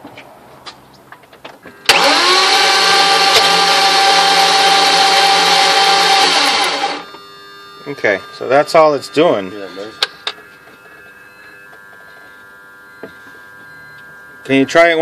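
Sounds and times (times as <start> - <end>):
starter motor cranking engine: 1.9 - 7.0.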